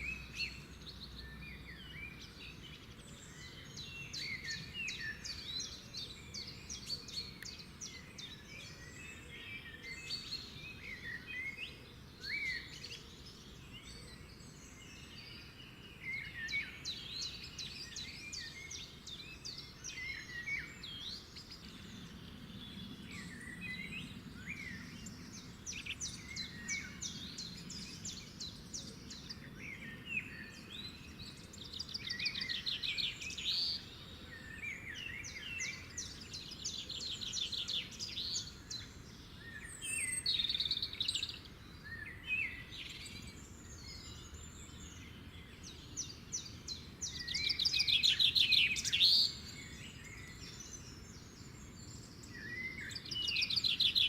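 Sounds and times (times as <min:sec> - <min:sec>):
birds chirping and whistling: 0:13.6 - 0:54.0.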